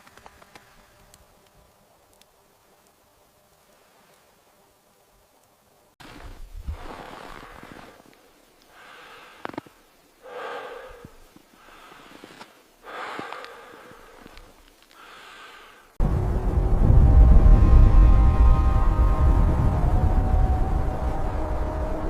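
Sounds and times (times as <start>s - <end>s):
faint clicks: 0.0s - 4.3s, 8.0s - 9.9s, 11.0s - 15.1s
person breathing heavily: 8.7s - 16.0s.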